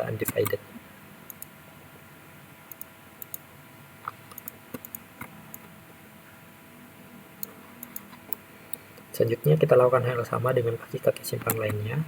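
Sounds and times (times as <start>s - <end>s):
keyboard and mouse clicks: 2.7s - 3.4s, 4.0s - 5.7s, 11.2s - 11.8s.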